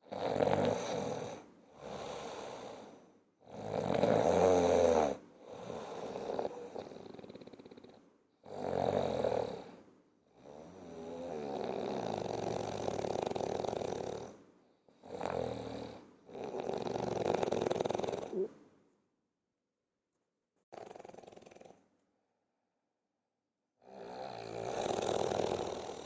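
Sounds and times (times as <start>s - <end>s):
person snoring: 0.0s - 9.8s, 10.4s - 18.6s, 20.7s - 21.8s, 23.8s - 26.0s.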